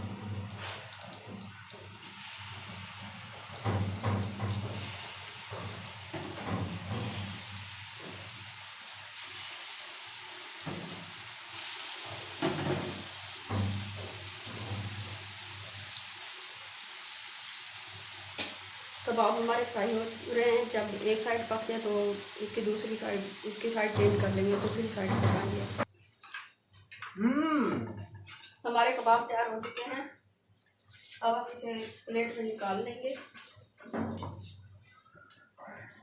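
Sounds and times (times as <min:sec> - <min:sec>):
meat sizzling in oil: 0:00.0 - 0:25.9.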